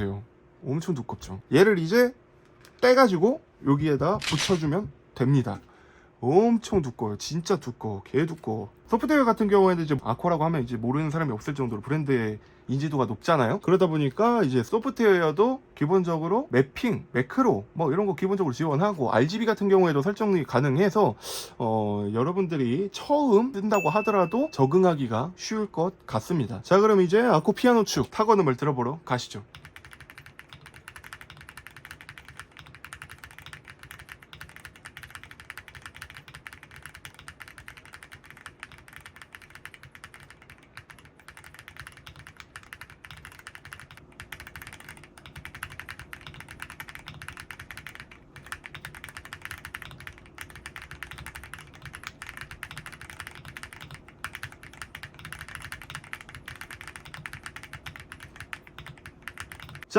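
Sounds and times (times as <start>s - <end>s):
mechanical keyboard typing: 4.2s - 4.8s, 29.4s - 59.9s.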